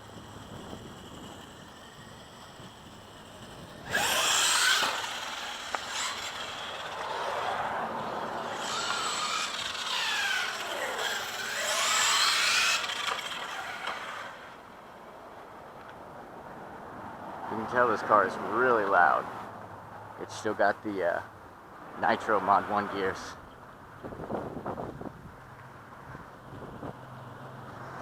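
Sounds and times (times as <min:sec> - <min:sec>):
rc car motor whining: 0:00.0 - 0:15.0.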